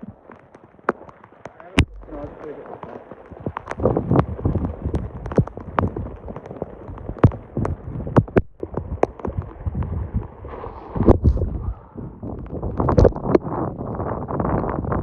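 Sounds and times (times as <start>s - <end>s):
wind rumbling on microphone: 0.0s - 15.0s
sharp taps and knocks: 0.2s - 9.5s.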